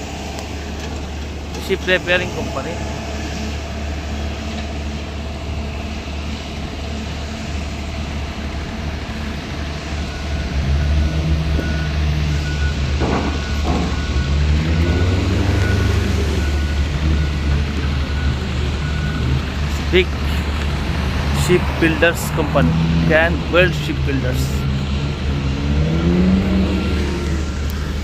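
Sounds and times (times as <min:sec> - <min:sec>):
vehicle engine and road rumble: 0:00.0 - 0:28.0
reversing alarm beeping: 0:09.5 - 0:20.2, 0:26.0 - 0:28.0.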